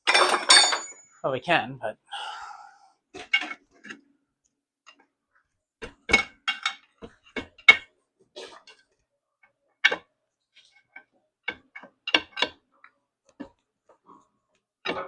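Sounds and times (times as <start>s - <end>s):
tools and steel parts clinking: 0.0s - 1.1s.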